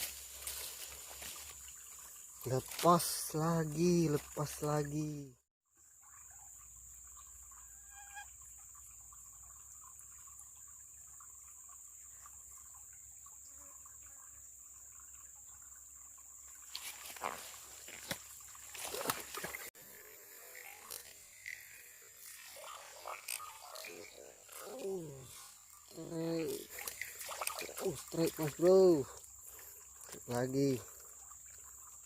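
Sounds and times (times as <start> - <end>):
river water trickling: 0.0 - 32.0
water splashes: 16.4 - 19.7, 20.5 - 32.0.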